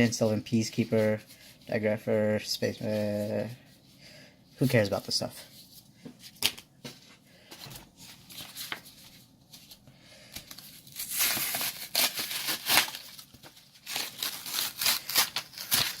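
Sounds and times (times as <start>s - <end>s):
card pack wrapper tearing: 10.7s - 16.0s.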